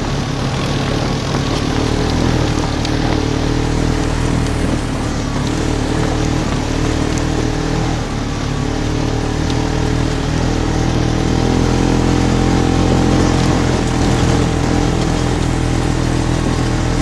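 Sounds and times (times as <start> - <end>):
rushing noise: 0.0 - 17.0
vehicle engine running steadily: 0.0 - 17.0.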